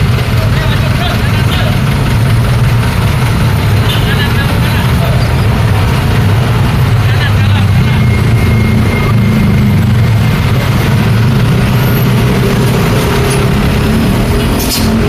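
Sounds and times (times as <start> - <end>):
busy road traffic rumble: 0.0 - 15.0.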